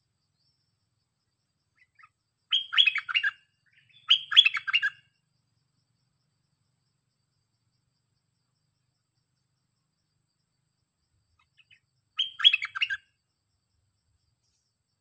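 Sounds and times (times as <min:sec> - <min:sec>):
bird singing whistled notes: 0:01.8 - 0:05.2, 0:11.4 - 0:13.2.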